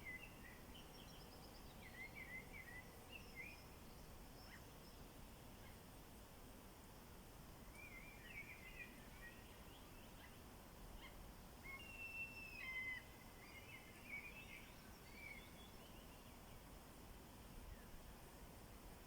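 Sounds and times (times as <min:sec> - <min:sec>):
songbird singing: 0:00.0 - 0:05.8, 0:07.7 - 0:10.4, 0:11.0 - 0:16.7.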